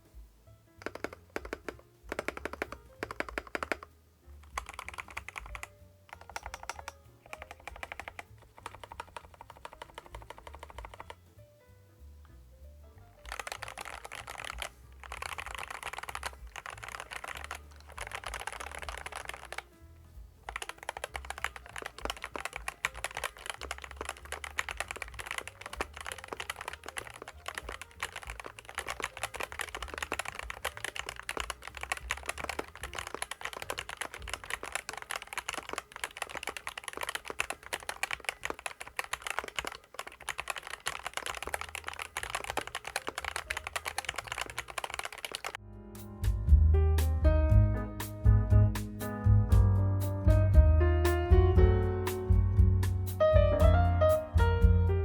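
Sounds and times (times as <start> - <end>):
background music: 0.0 - 55.0
mechanical keyboard typing: 0.8 - 11.2, 13.2 - 19.8, 20.4 - 45.6.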